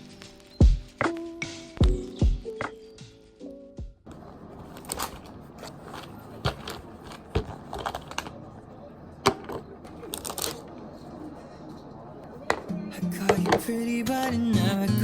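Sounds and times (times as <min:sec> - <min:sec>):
background music: 0:00.0 - 0:04.1, 0:12.7 - 0:15.0
steady background noise: 0:00.0 - 0:14.6.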